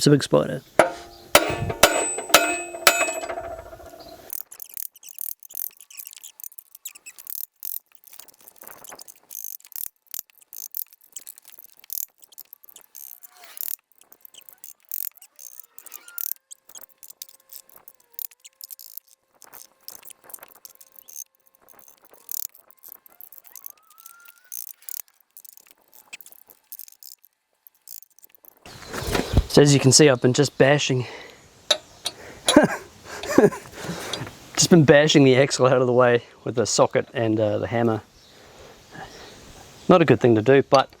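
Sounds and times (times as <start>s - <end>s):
hammer striking metal socket: 0.8s - 4.2s, 31.7s - 33.4s.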